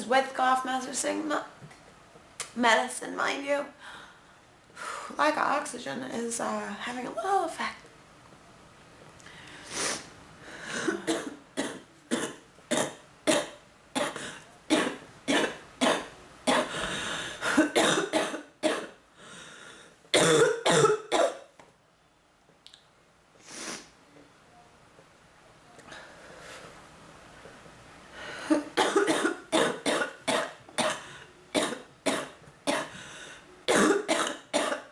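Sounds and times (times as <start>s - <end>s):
woman coughing: 10.8s - 16.8s, 17.5s - 19.0s, 20.2s - 21.4s, 28.5s - 31.0s, 31.6s - 32.9s, 33.7s - 34.9s.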